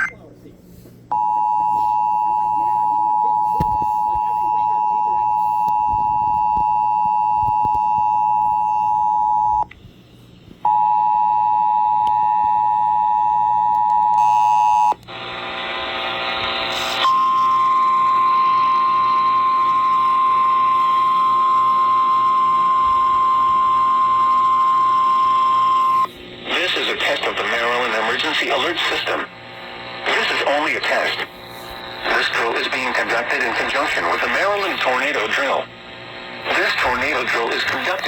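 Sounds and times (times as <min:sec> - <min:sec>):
hissing static: 0:26.1 - 0:38.0.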